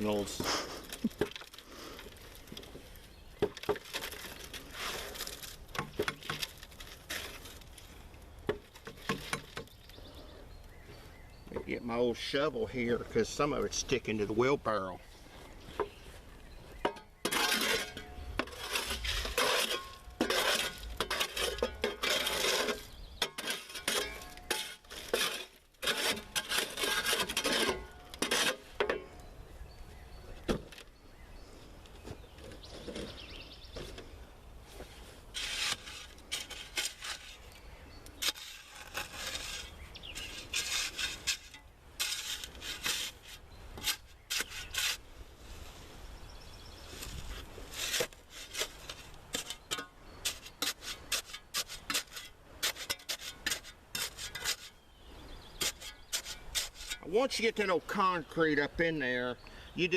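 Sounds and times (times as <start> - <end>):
shovel scraping wet concrete: 3.7 - 7.7, 16.9 - 29.1, 34.7 - 37.6, 38.2 - 45.1, 47.0 - 54.8, 55.4 - 58.3.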